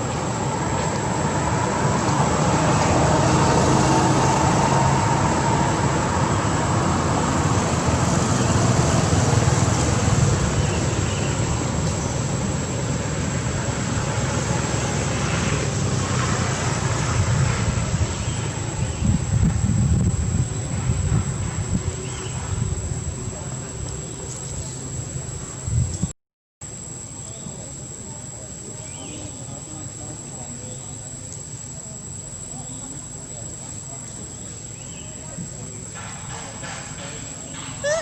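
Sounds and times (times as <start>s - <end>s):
road traffic noise: 0.0s - 38.0s.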